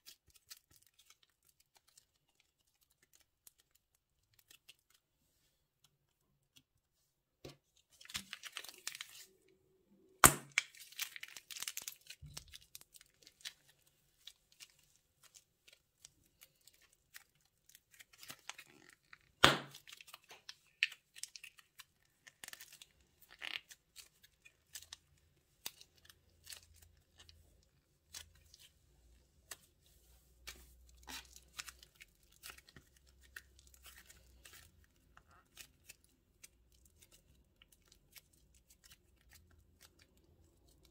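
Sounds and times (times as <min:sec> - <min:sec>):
plastic bags crinkling and tearing: 0:08.0 - 0:09.4, 0:10.3 - 0:28.7.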